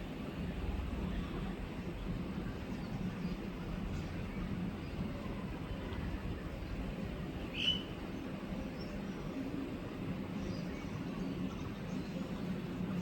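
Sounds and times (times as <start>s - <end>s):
bird chirping: 7.5s - 7.9s.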